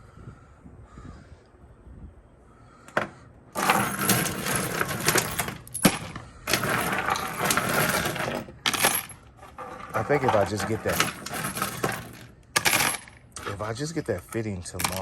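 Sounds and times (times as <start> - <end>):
metallic rattling and clicking: 3.6 - 15.0.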